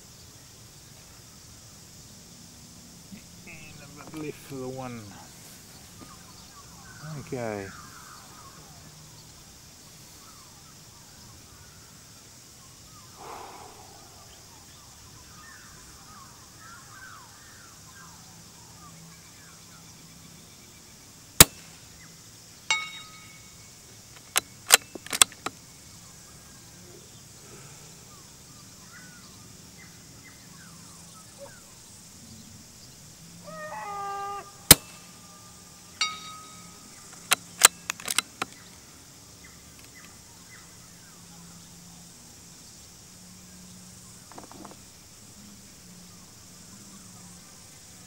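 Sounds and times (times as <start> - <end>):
rifle bolt metallic clicks: 24.2 - 25.5, 37.1 - 38.6.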